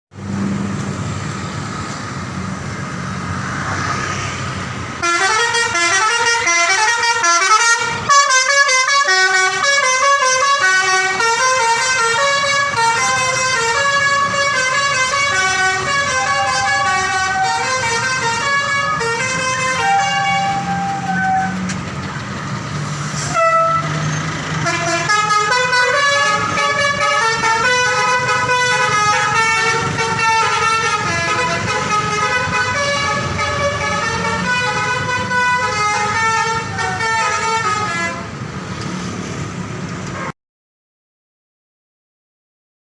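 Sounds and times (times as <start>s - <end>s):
bus engine rumble: 0.1s - 40.3s
multi-tone air horn melody: 5.0s - 21.6s, 23.2s - 24.0s, 24.6s - 38.4s.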